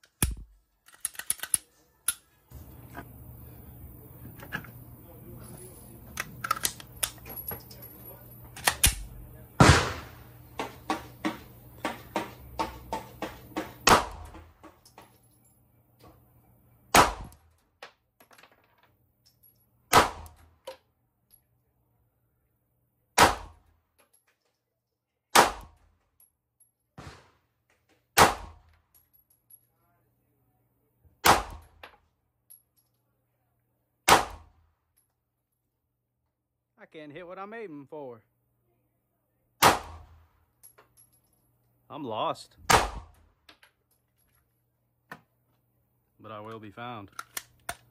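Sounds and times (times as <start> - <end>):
pistol gunshots: 8.7 - 14.6, 16.9 - 17.4, 19.9 - 20.4, 23.2 - 23.6, 25.3 - 25.8, 27.0 - 27.4, 28.1 - 28.7, 31.2 - 31.8, 34.1 - 34.6, 39.6 - 40.3, 42.6 - 43.2.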